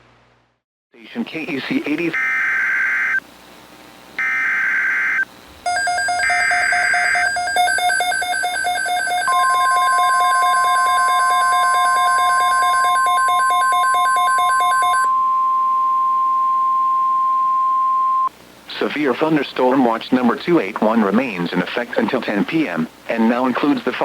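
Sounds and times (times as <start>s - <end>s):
rapid pulsing alarm beep: 4.2s - 15.6s.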